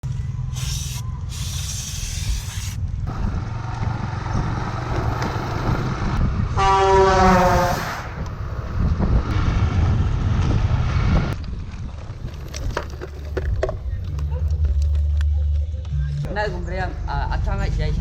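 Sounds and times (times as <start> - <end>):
low vehicle rumble: 0.0 - 18.0
hissing noise: 0.6 - 2.8
loud horn blast: 6.5 - 8.1.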